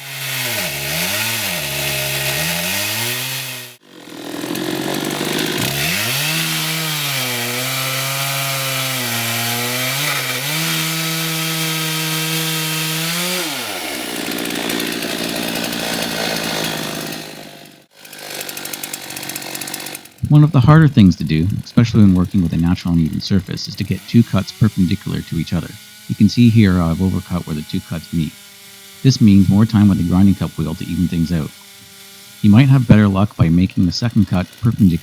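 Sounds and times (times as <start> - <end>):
chainsaw cutting into stone: 0.0 - 35.0.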